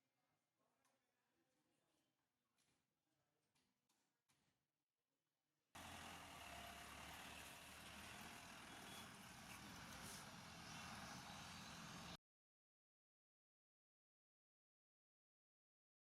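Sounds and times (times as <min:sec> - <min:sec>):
low rumble of traffic: 0:05.8 - 0:12.2.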